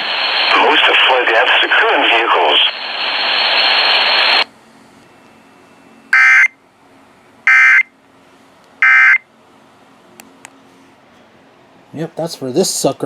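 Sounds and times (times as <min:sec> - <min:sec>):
warbling modem chirps: 0:06.1 - 0:06.5, 0:07.5 - 0:07.9, 0:08.8 - 0:09.2.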